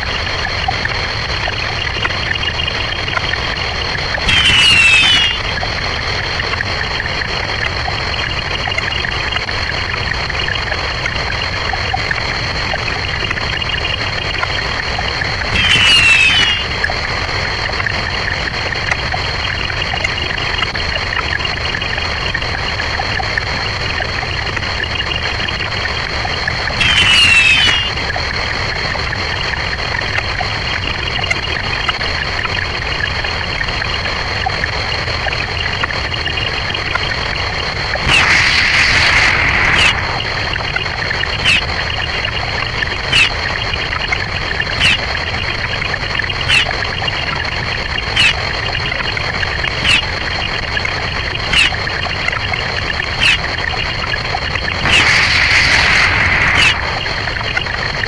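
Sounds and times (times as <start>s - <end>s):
sped-up sound effects hissy wash: 37.5s - 43.3s, 54.5s - 58.0s
burst of quick falling sweeps: 54.8s - 57.2s.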